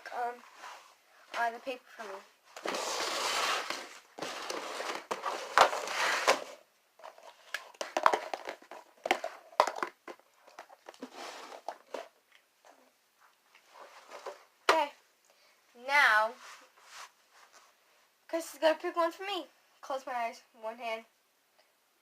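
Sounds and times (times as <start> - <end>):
crinkling and rustling: 0.0 - 15.0.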